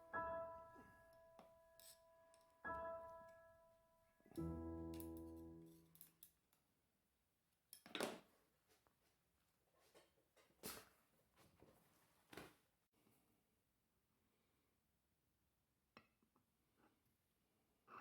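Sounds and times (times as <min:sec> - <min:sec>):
ringing music notes and chord: 0:04.4 - 0:06.1.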